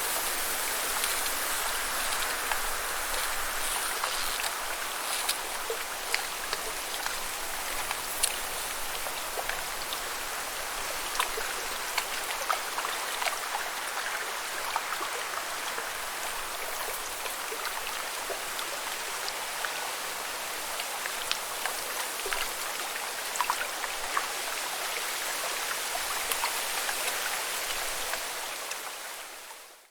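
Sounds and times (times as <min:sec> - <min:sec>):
watery hiss: 0:00.0 - 0:10.6
water drips and splashes: 0:00.0 - 0:29.1.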